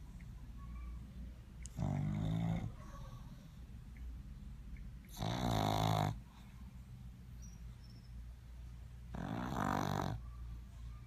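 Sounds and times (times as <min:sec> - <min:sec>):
dog snoring: 0:01.7 - 0:02.8, 0:05.1 - 0:06.2, 0:09.1 - 0:10.2.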